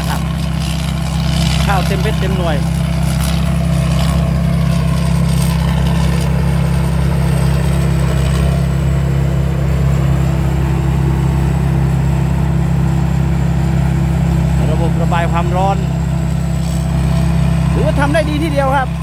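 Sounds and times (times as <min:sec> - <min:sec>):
combine harvester engine drone: 0:00.0 - 0:19.0.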